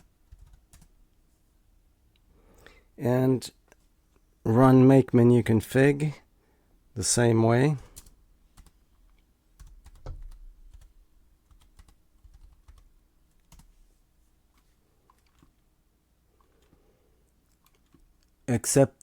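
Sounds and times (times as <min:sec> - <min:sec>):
typing on computer keyboard: 0:00.2 - 0:00.9, 0:07.9 - 0:08.8, 0:09.6 - 0:13.7.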